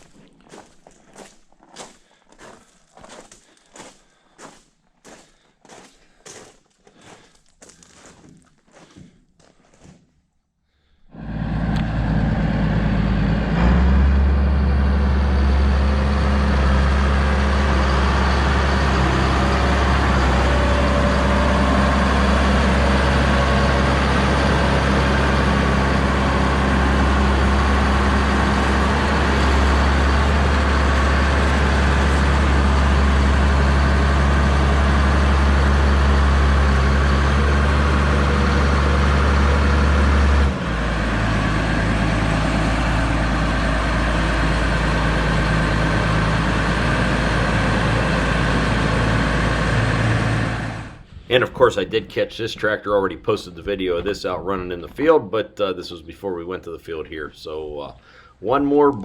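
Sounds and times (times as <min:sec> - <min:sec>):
tractor engine rumbling: 0:11.1 - 0:55.2.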